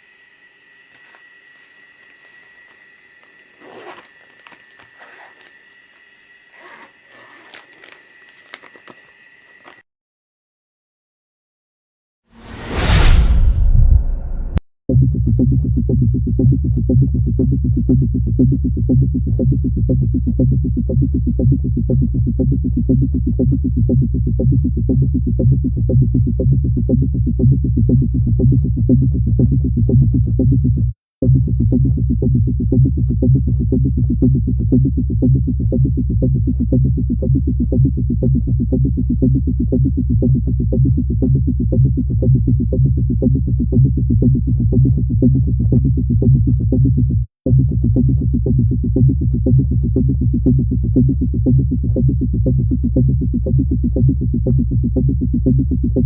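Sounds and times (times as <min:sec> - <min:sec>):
steady high-pitched whine: 0:00.0 - 0:09.8
packaging rustling and crinkling: 0:02.3 - 0:09.8.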